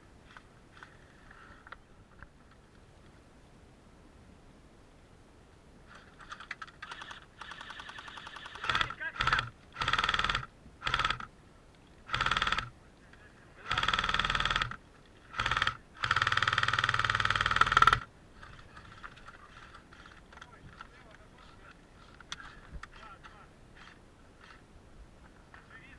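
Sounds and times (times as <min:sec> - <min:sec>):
airsoft gun firing bursts: 0:06.2 - 0:11.3, 0:12.1 - 0:12.7, 0:13.6 - 0:19.1.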